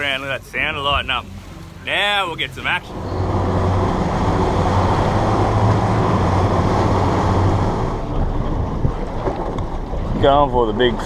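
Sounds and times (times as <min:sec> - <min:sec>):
motorboat engine drone: 0:00.0 - 0:10.2
rushing water: 0:00.0 - 0:11.0.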